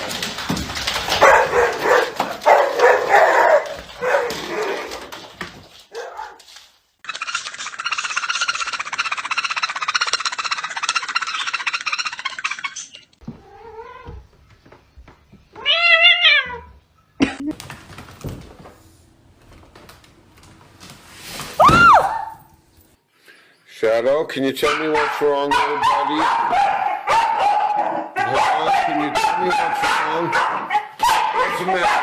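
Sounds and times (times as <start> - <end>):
cat meowing: 15.6 - 16.8
cat yowling: 15.6 - 16.8.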